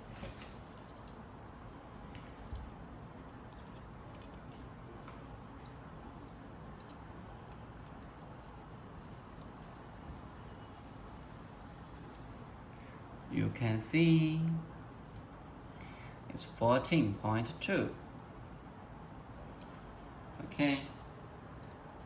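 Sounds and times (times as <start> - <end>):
faint clicks and handling sounds: 0.0 - 13.2, 14.9 - 15.9, 19.4 - 22.0.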